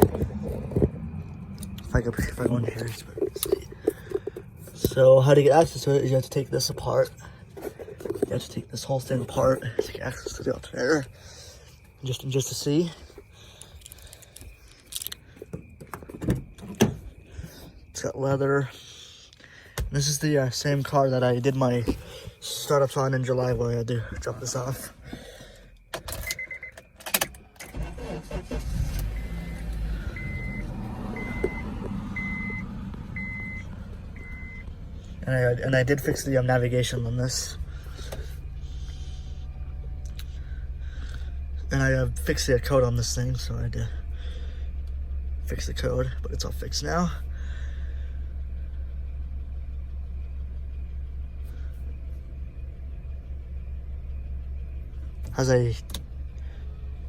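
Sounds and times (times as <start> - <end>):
car engine starting and idling: 0.0 - 18.7, 19.5 - 57.0
ignition clicks: 25.8 - 34.8, 55.1 - 56.5
dashboard warning chime beeps: 26.2 - 27.0, 29.0 - 34.7.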